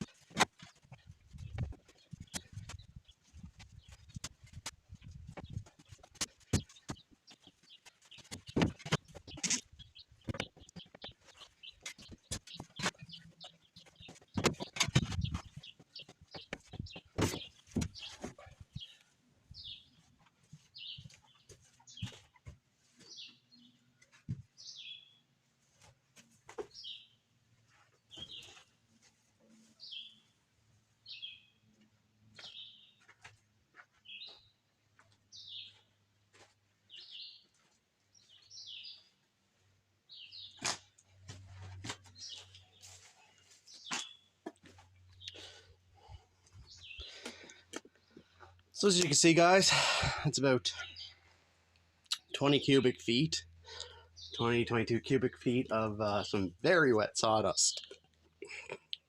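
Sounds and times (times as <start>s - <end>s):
bird chirping: 0.0s - 25.3s, 26.6s - 27.3s, 28.0s - 28.8s, 29.5s - 30.4s, 31.0s - 33.1s, 34.0s - 34.6s, 35.2s - 36.0s, 36.8s - 37.5s, 38.1s - 39.2s, 40.1s - 40.6s, 41.2s - 49.6s, 52.0s - 59.0s
knocks and thuds: 8.2s - 9.4s, 13.9s - 18.5s.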